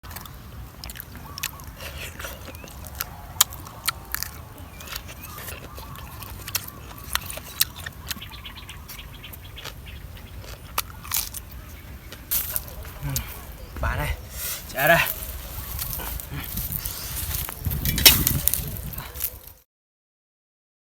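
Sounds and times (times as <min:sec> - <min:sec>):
faint bird chirps: 0:01.1 - 0:16.4.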